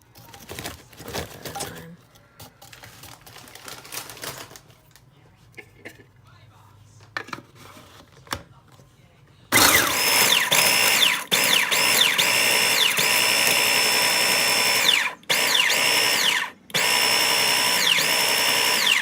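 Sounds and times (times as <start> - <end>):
food chopper motor whining: 9.5 - 19.0.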